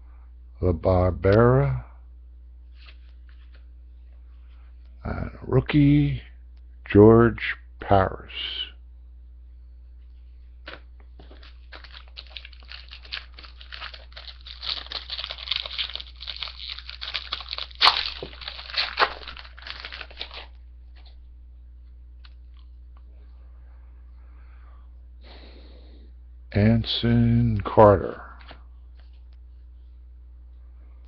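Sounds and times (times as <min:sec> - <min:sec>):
wrapper tearing and crinkling: 0:10.7 - 0:20.6.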